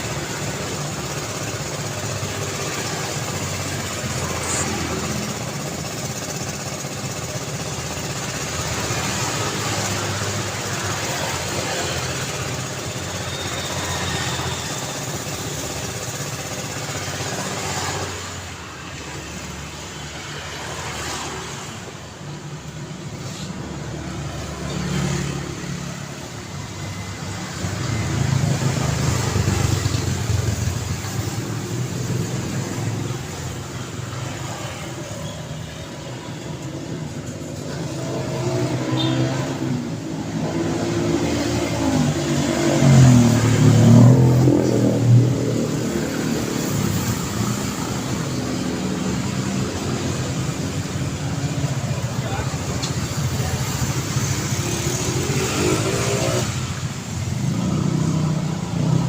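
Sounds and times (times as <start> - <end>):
passing cars: 8.2 - 59.0.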